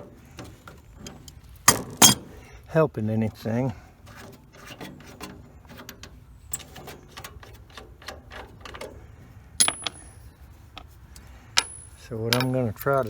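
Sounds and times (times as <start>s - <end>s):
light metallic rattles: 4.1s - 13.0s.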